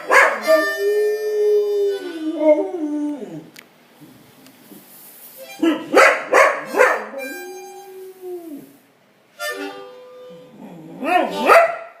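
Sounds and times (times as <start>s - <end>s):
harmonica notes: 0.0s - 2.2s, 6.6s - 8.7s, 9.3s - 10.6s
dog howling: 0.0s - 3.5s, 7.0s - 8.8s.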